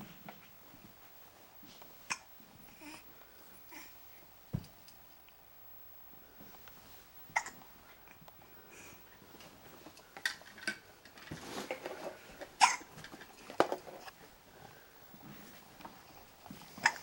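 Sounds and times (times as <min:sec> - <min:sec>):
person hiccuping: 0:07.4 - 0:07.6.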